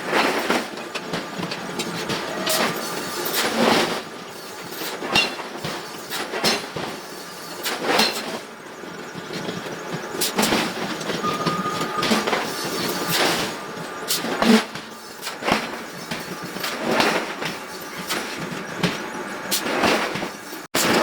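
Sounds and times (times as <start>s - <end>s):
metal pieces clanking and scraping: 10.6s - 18.4s
metal ringing tone: 11.1s - 14.1s.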